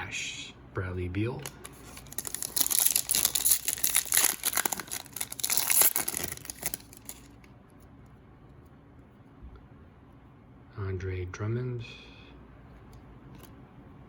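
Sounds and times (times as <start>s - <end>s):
plastic wrapper crinkling and tearing: 1.4s - 7.5s.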